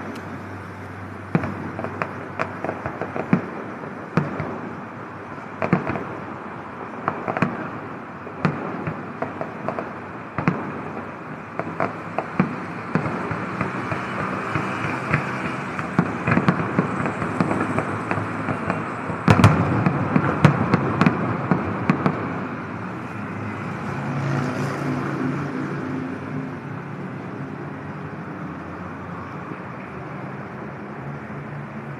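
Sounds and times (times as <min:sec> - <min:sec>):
fireworks bangs and crackles: 0:00.0 - 0:31.7
steady background noise: 0:00.0 - 0:31.9.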